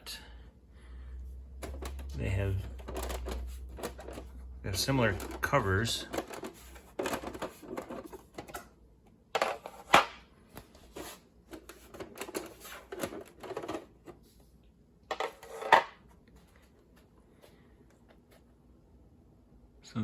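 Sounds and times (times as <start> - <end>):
plastic covers clicking and clattering: 1.6 - 8.7, 9.4 - 14.2, 15.1 - 16.0.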